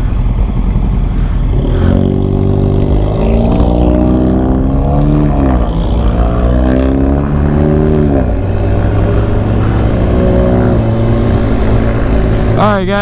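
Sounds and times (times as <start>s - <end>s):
motorcycle engine accelerating: 0.0s - 13.0s
wind rush: 0.0s - 13.0s.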